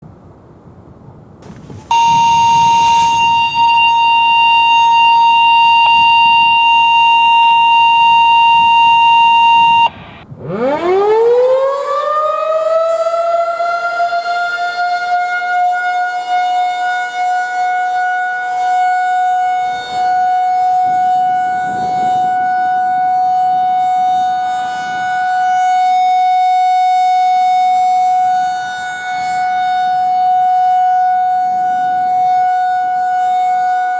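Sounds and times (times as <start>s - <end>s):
outdoor warning siren wailing: 1.6s - 33.9s
steady high tone: 1.9s - 10.2s.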